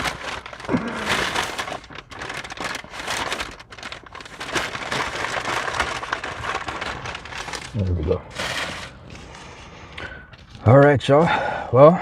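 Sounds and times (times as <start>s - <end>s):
wet-wipe packet crinkling: 0.0s - 9.3s.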